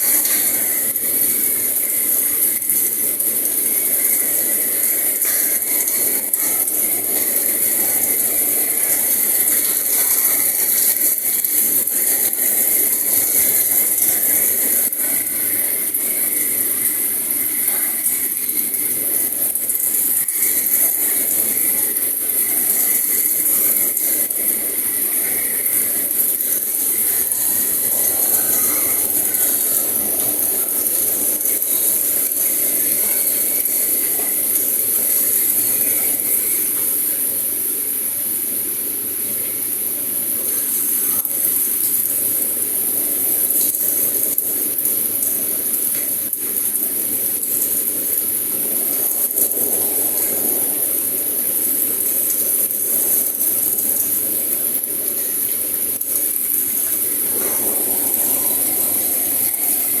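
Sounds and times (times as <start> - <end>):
faint crackles: 0.0 - 38.2, 40.3 - 60.0
steady high hissing: 0.0 - 60.0.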